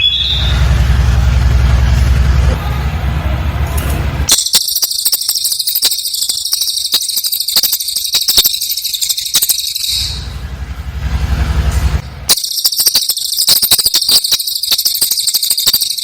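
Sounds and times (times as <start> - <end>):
bird high-pitched rapid trill: 0.0 - 0.7, 4.3 - 10.4, 12.3 - 16.0.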